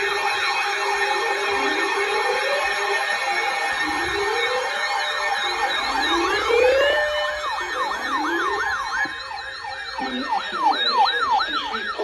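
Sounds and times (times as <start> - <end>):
gliding siren tones: 0.0 - 12.0
electronic siren yelping: 0.2 - 12.0.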